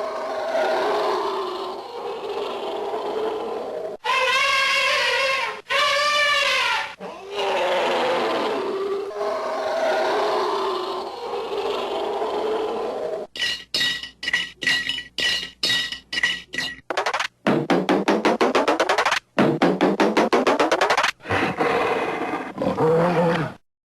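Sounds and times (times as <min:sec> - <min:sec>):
sharp clinking strokes: 0:13.3 - 0:16.9.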